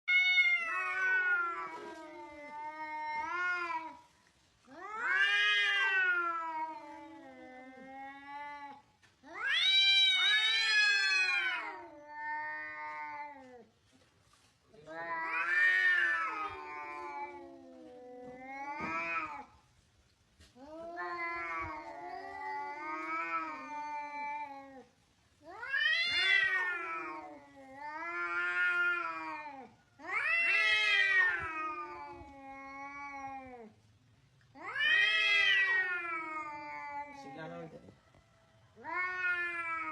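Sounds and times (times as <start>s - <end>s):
angry cat yowling: 4.7s - 13.5s, 14.9s - 19.5s, 25.5s - 33.8s, 34.6s - 37.5s, 38.8s - 39.9s.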